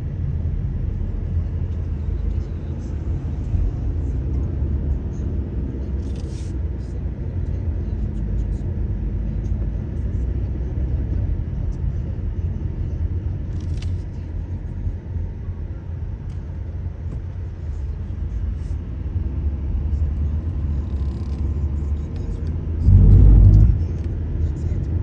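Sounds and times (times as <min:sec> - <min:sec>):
car road and engine rumble: 0:00.0 - 0:25.0
sudden loud low rumble: 0:22.7 - 0:24.4.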